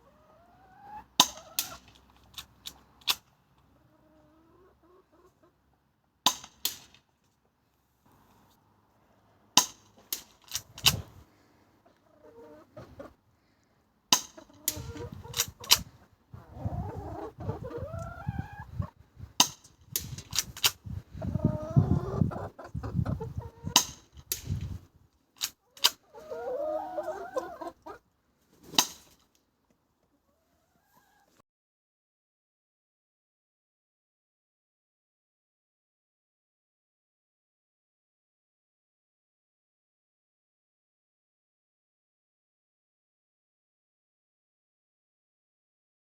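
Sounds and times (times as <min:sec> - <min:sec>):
chickens clucking: 0:00.0 - 0:02.9, 0:03.6 - 0:05.7, 0:11.8 - 0:13.2, 0:14.3 - 0:19.0, 0:20.4 - 0:23.9, 0:25.6 - 0:28.0, 0:30.0 - 0:31.4.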